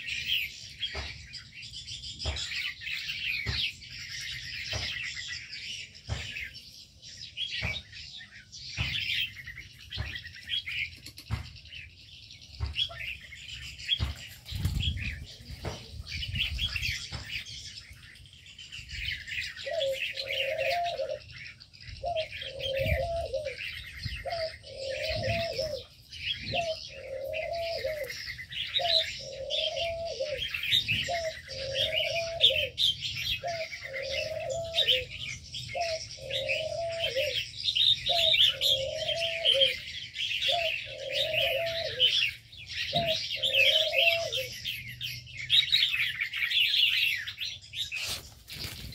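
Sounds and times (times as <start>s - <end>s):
birds chirping and twittering: 0.0s - 48.9s
dove cooing: 19.2s - 47.2s.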